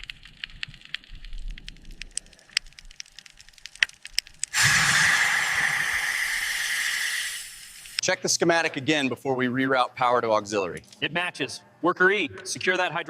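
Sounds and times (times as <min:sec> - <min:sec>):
pressurized jet hissing: 0:04.5 - 0:08.0.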